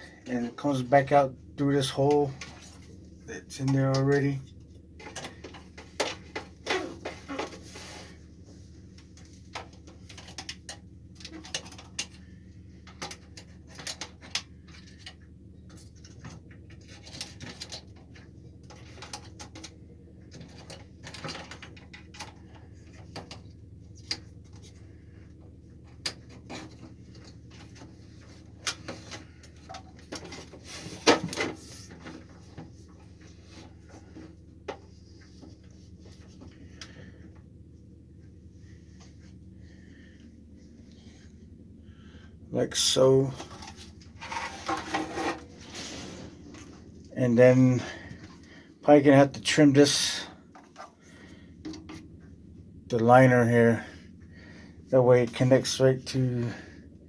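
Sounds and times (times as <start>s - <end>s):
steady low hum: 0.0s - 57.0s
hands handling a hose: 3.6s - 41.3s.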